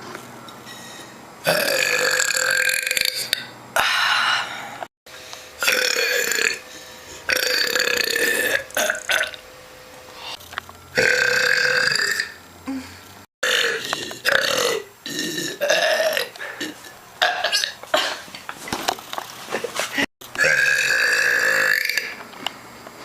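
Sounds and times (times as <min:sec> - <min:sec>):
woman belching: 0:01.5 - 0:03.5, 0:05.6 - 0:06.6, 0:07.3 - 0:09.4, 0:11.0 - 0:12.4, 0:13.4 - 0:17.8, 0:20.4 - 0:22.2.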